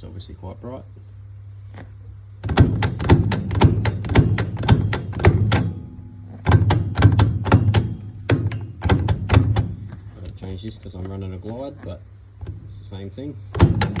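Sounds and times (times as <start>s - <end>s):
low steady hum: 0.0s - 14.0s
shifter lever ratcheting clicks: 2.4s - 12.8s, 13.6s - 14.0s.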